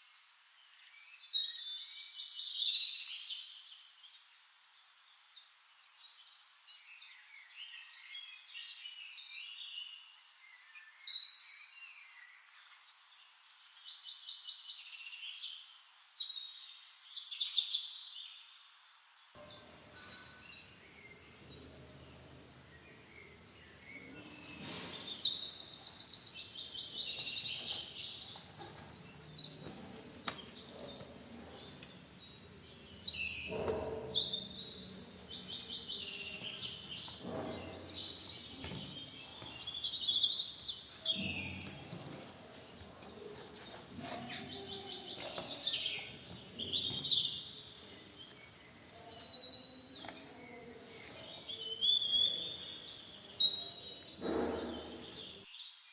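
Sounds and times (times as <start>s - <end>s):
soft knocks: 19.4s - 40.3s, 54.1s - 55.4s
songbird trilling and chirping: 19.4s - 55.4s.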